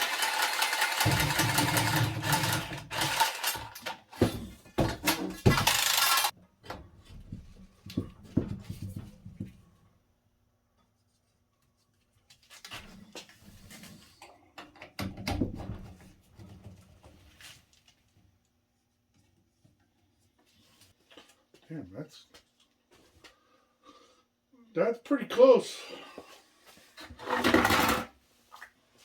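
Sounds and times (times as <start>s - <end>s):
copper pipe knocks and clatter: 1.0s - 5.8s, 6.6s - 9.6s.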